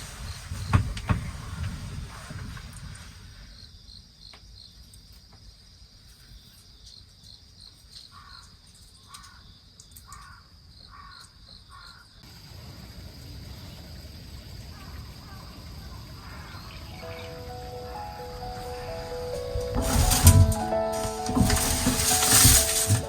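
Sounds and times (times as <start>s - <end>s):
crow cawing: 10.1s - 12.1s.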